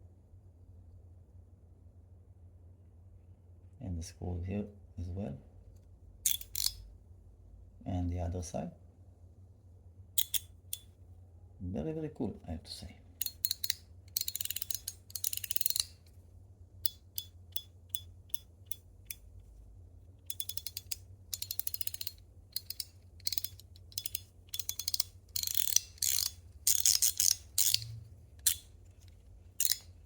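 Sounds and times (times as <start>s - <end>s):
plastic fidget slider clicking: 6.3s - 6.8s, 10.2s - 10.8s, 13.2s - 16.0s, 20.3s - 30.0s.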